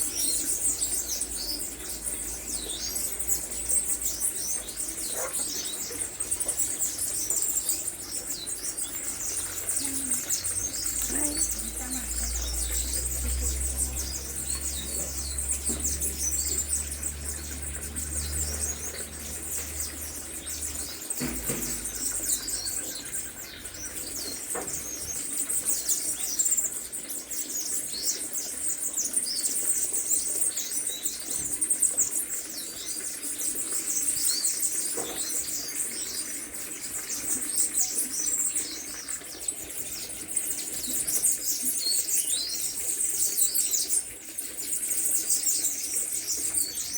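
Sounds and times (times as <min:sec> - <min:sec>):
birds chirping and twittering: 0:00.0 - 0:46.9.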